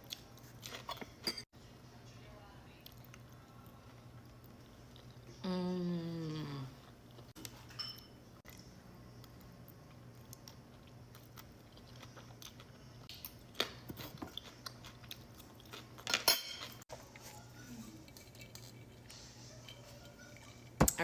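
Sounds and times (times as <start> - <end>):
person chewing food: 8.4 - 16.2, 16.8 - 20.6.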